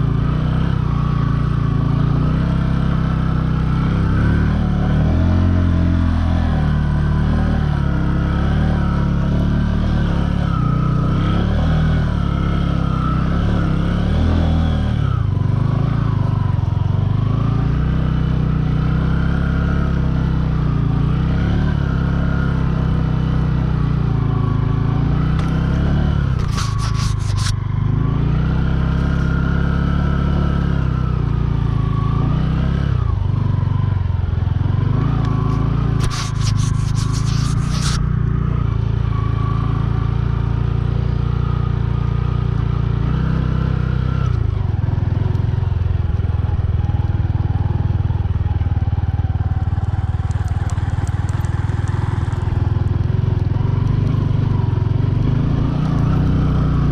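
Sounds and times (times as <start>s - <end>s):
motorcycle engine revving: 0.0s - 56.9s
scraping clatter: 26.4s - 27.6s, 36.0s - 38.1s.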